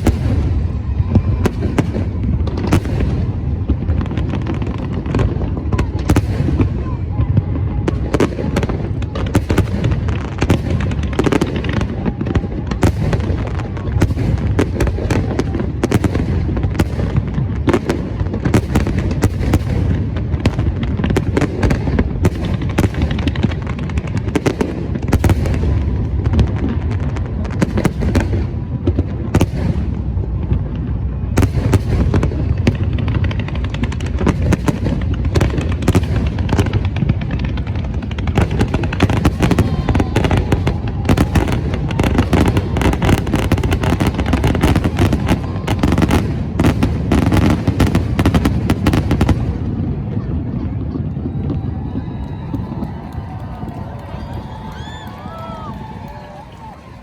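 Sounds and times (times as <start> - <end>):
fireworks bangs and booms: 0.0 - 57.0
fireworks crackle: 0.0 - 57.0.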